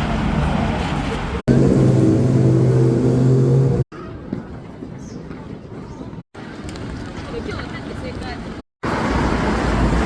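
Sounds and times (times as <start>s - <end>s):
vehicle engine humming: 0.0s - 3.8s
traffic rumble: 0.0s - 10.0s.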